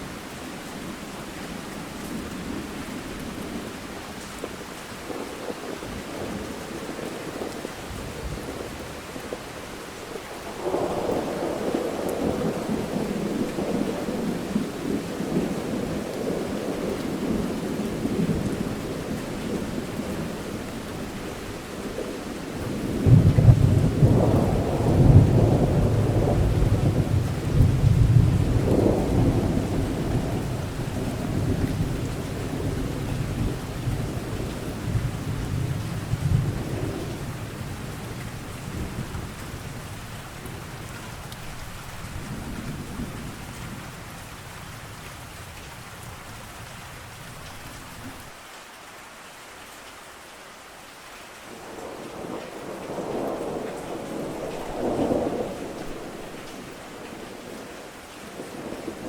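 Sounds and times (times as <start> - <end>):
steady rain: 0.0 - 59.0
rolling thunder: 22.6 - 41.0, 51.8 - 57.6.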